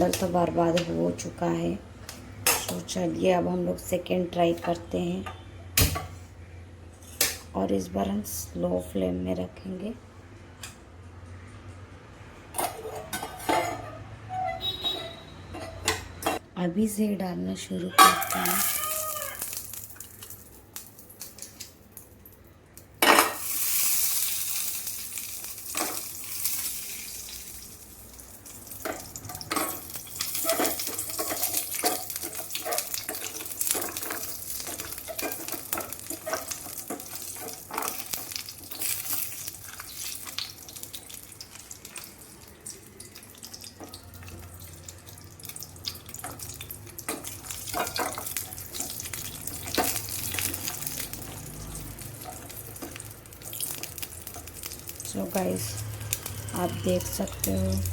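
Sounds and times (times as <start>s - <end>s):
wax sizzling: 23.4s - 57.9s.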